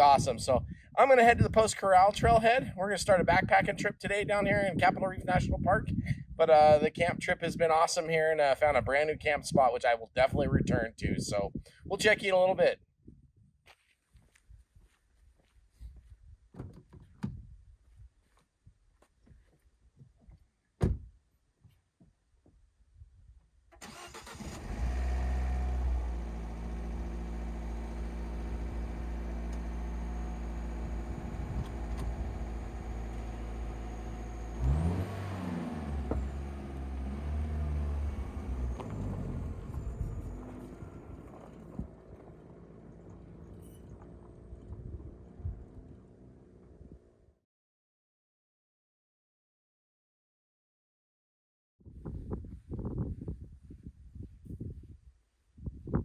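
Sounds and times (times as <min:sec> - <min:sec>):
car engine starting and idling: 0:23.7 - 0:47.3.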